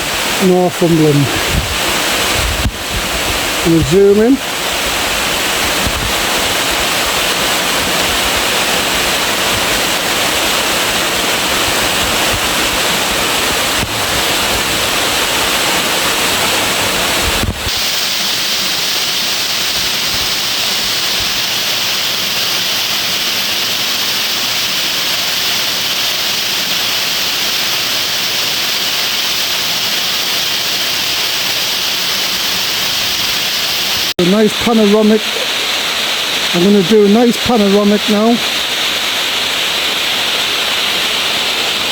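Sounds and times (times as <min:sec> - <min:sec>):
waterfall rushing: 0:00.0 - 0:41.9.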